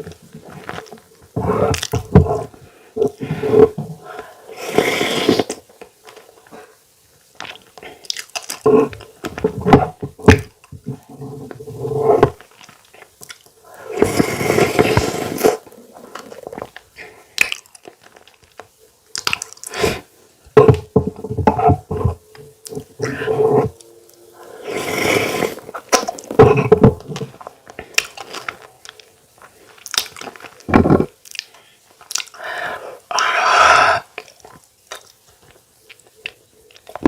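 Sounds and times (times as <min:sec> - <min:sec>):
chewing and crunching: 0:07.4 - 0:09.1, 0:25.6 - 0:32.4.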